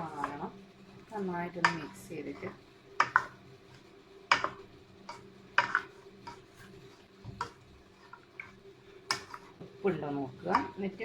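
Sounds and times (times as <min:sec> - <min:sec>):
spoon stirring in a pot: 0:00.0 - 0:11.0
spoon knocking against pot: 0:03.0 - 0:03.4, 0:04.3 - 0:04.6.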